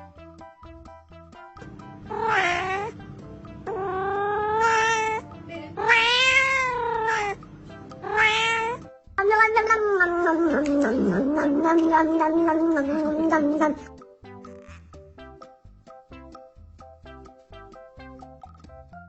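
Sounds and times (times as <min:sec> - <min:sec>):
plucked background music: 0:00.0 - 0:19.0
cat meowing: 0:02.0 - 0:03.0, 0:03.7 - 0:05.2, 0:05.8 - 0:07.4, 0:08.0 - 0:13.9.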